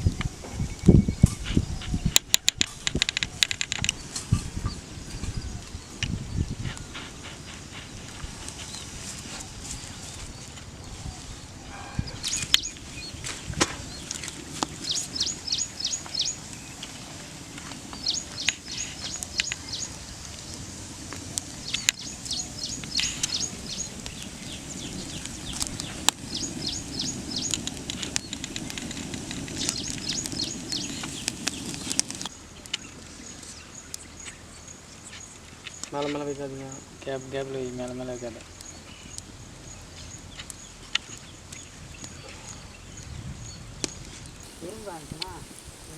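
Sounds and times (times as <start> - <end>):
sharp clicks and crackles: 2.1 - 4.5, 12.2 - 32.9
bird chirping: 3.2 - 35.9, 38.5 - 45.9.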